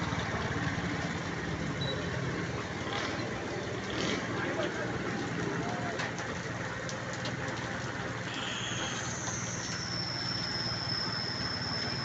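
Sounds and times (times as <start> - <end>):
vehicle engine running: 0.0 - 12.0
thin high squeal: 8.3 - 12.0.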